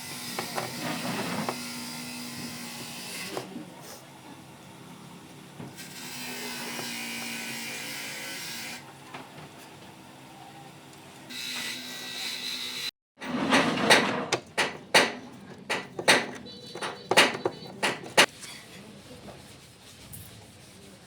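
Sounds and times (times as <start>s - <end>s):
sharp knocks: 13.5s - 18.3s.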